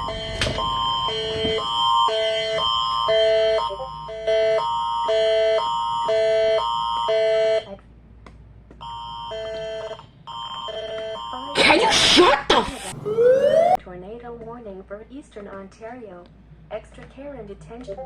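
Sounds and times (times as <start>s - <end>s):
alternating alert chords: 12.7s - 13.8s.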